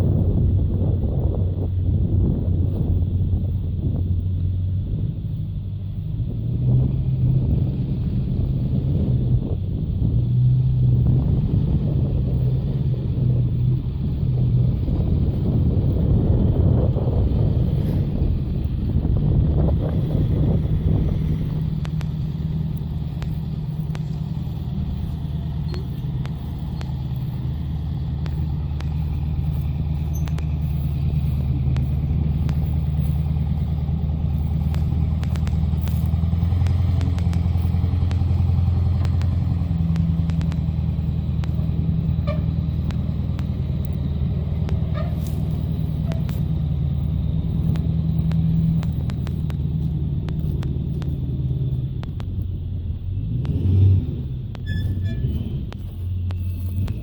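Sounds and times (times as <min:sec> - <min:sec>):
diesel truck engine drone: 0:00.0 - 0:57.0
faint turbo whistle: 0:39.6 - 0:49.9, 0:54.5 - 0:57.0.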